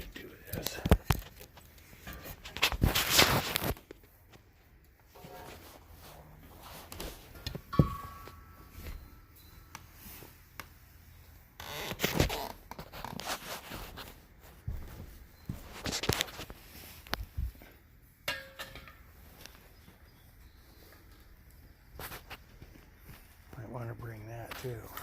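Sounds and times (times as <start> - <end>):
hands scraping and rustling hose fittings: 0.0 - 25.0
ringing metal clink: 7.7 - 9.8, 18.3 - 19.5.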